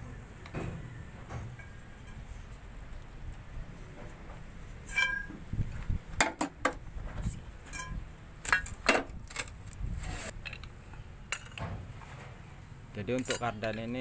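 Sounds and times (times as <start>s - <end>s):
metal tools clinking: 4.8s - 5.4s, 7.6s - 8.9s, 13.1s - 14.0s.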